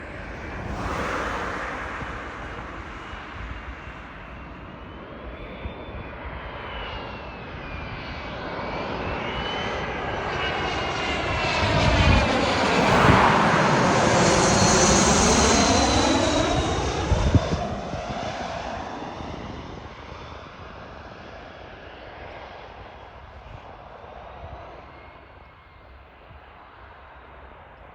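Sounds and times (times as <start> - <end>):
jet flying past: 0.0 - 27.9.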